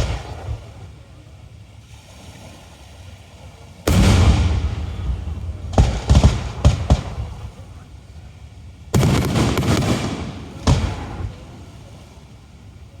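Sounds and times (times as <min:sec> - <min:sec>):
firework boom: 0:03.9 - 0:07.8
sharp firework cracks: 0:03.9 - 0:07.8, 0:09.0 - 0:11.5.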